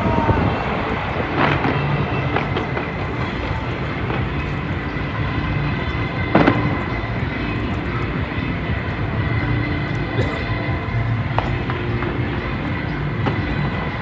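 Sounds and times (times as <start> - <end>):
fireworks rumbling: 0.0 - 14.0.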